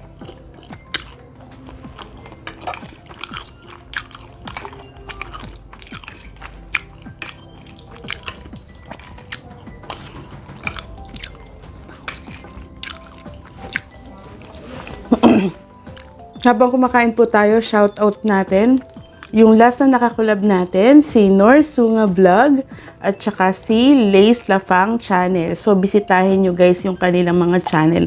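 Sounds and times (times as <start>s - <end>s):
person chewing wetly: 0.0s - 16.4s, 18.2s - 19.4s
quiet background music: 0.0s - 28.0s.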